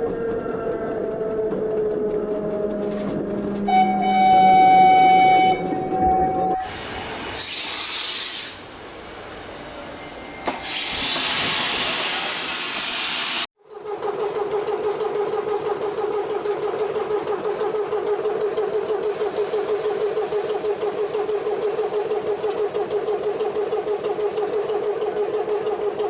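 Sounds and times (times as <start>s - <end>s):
horn-like tone from small speaker: 3.7s - 6.6s.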